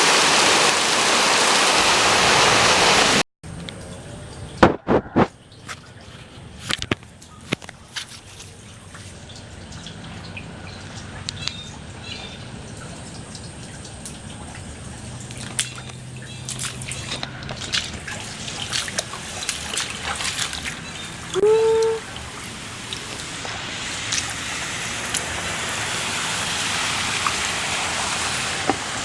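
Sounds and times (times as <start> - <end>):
water dripping and splashing: 0.0 - 29.0
sharp splashes or knocks: 15.2 - 21.5.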